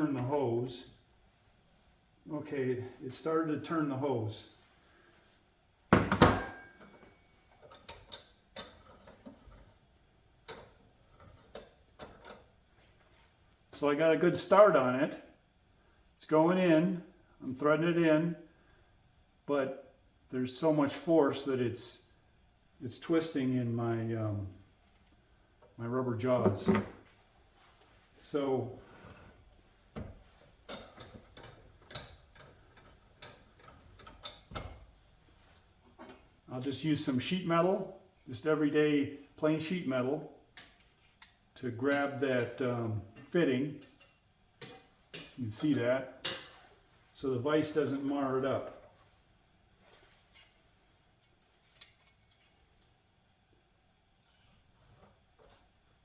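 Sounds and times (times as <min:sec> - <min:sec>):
metal tools clicking and tapping: 0:30.7 - 0:34.8.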